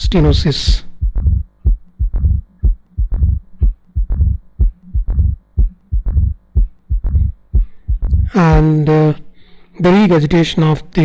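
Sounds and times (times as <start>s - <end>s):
low heart murmur rumble: 0.0s - 8.8s
heartbeat: 0.0s - 8.9s.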